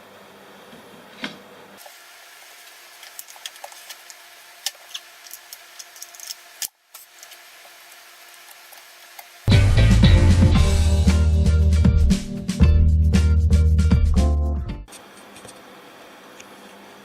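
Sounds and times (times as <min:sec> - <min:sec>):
loud music with drums and guitar: 0:09.5 - 0:14.8.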